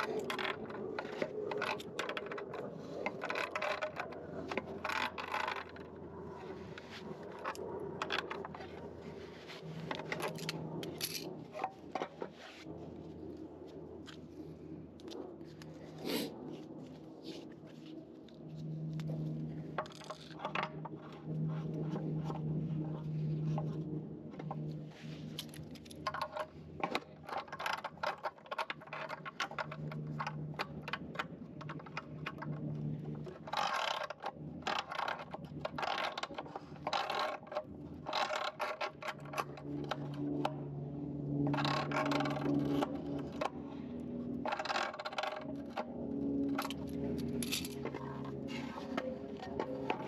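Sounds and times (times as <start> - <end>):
low steady hum: 0.0 - 50.0
metal tools clinking and scraping: 9.8 - 12.6, 46.5 - 50.0.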